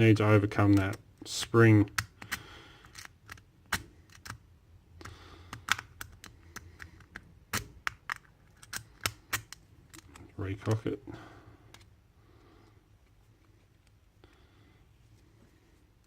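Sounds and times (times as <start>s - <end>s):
lock pins clicking: 5.5s - 10.2s.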